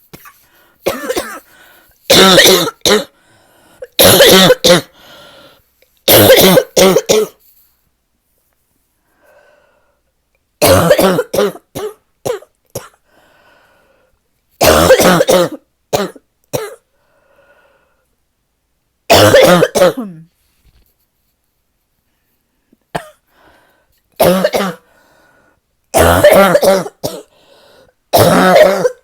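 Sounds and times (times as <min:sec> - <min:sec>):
person deep barking cough: 0:00.2 - 0:03.1, 0:03.9 - 0:05.0, 0:06.1 - 0:07.4, 0:10.6 - 0:13.0, 0:14.6 - 0:16.8, 0:19.1 - 0:20.3, 0:22.9 - 0:23.2, 0:24.2 - 0:24.8, 0:25.9 - 0:27.3, 0:28.1 - 0:29.0
faint breaths: 0:01.4 - 0:02.1, 0:03.1 - 0:04.0, 0:04.9 - 0:05.9, 0:08.9 - 0:10.1, 0:13.0 - 0:14.2, 0:16.9 - 0:18.2, 0:22.0 - 0:24.1, 0:24.8 - 0:25.7, 0:27.3 - 0:28.0.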